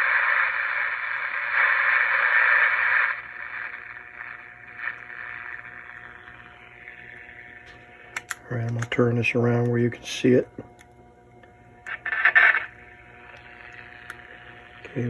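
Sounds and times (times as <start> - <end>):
radio static hiss: 0.0 - 10.8, 11.8 - 15.0.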